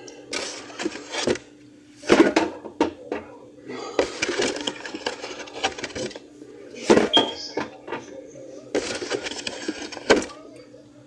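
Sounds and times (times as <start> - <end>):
cans and bottles clunking: 2.0 - 3.3, 4.0 - 6.2, 6.8 - 8.1, 8.8 - 10.4.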